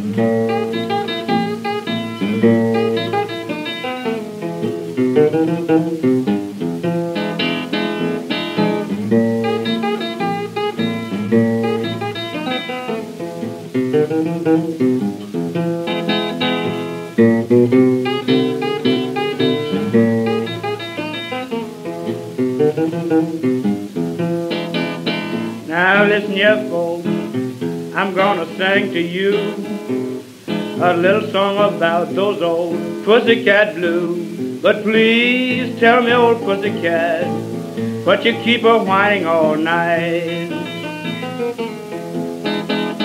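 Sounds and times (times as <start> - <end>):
acoustic blues guitar: 0.0 - 43.0.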